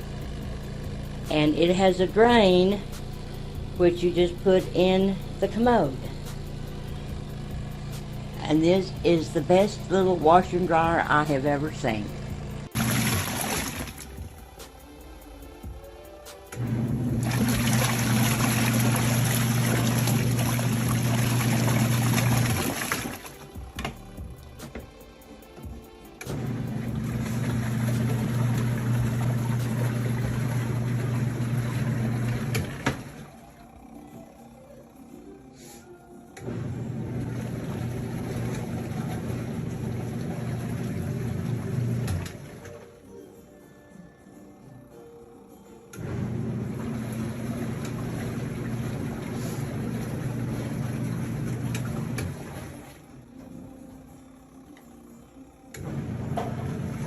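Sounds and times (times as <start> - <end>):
washing machine motor humming: 0.0 - 43.3, 45.0 - 57.0
water rushing: 12.7 - 14.4, 17.1 - 23.5, 26.8 - 33.3.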